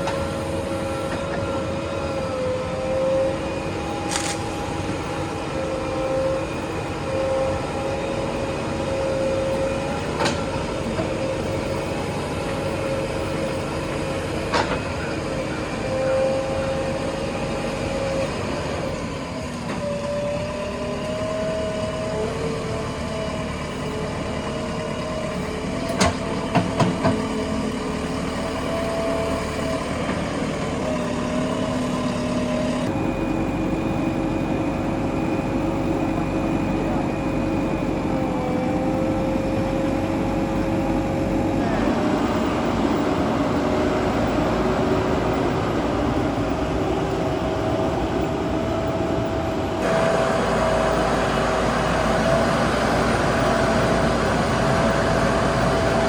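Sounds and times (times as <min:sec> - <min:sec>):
diesel engine under load: 0:00.0 - 0:56.0.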